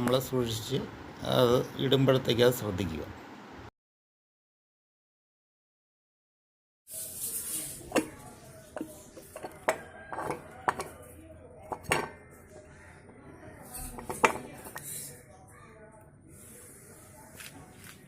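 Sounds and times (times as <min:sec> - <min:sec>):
metal clinks and taps: 0:08.8 - 0:11.0.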